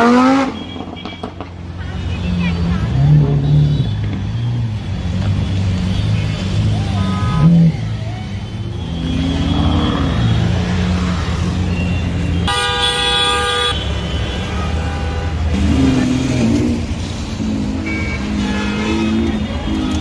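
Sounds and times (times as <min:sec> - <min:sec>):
car horn: 0:00.0 - 0:02.4, 0:05.9 - 0:07.9, 0:11.8 - 0:16.0, 0:17.7 - 0:20.0
car engines in traffic: 0:00.0 - 0:20.0.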